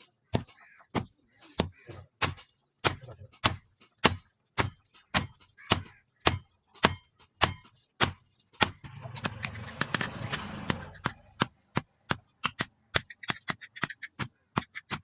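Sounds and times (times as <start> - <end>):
hammer ringing on steel: 1.6 - 11.4.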